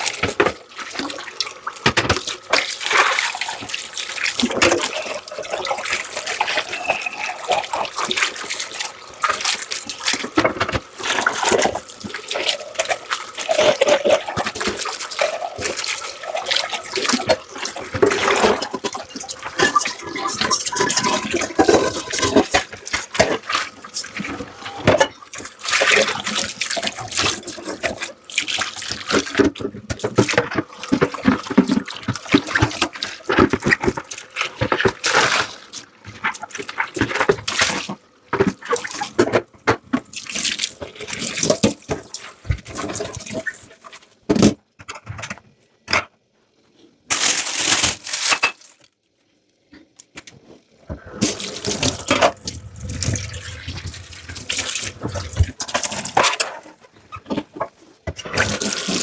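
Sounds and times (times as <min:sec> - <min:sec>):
tap water running and splashing: 0:00.0 - 0:45.3, 0:49.7 - 0:59.0
dishes clinking and knocking: 0:19.6 - 0:22.7, 0:24.5 - 0:25.2.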